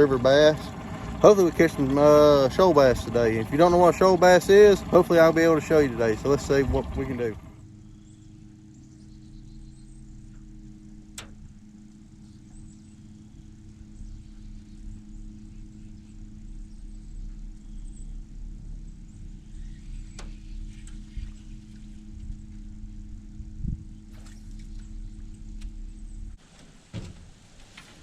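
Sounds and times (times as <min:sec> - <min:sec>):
boat motor humming: 0:00.0 - 0:28.0.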